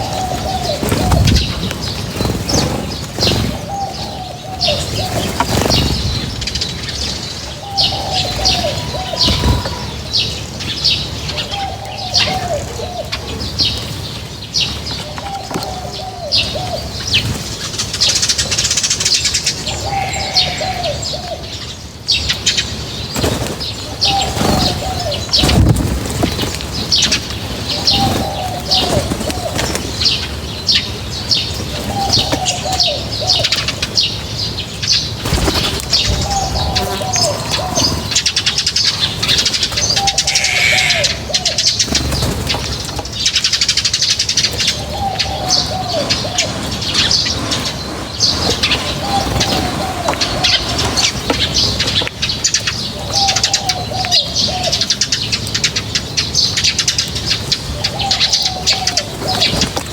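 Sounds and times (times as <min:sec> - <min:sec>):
birds chirping and twittering: 0:00.0 - 0:59.9
low phrased bird call: 0:19.7 - 0:21.4, 0:36.2 - 0:41.6, 0:44.5 - 0:51.9.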